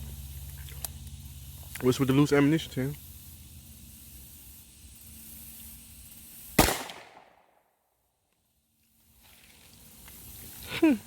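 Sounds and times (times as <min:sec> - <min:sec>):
gunshot: 0:06.6 - 0:07.5.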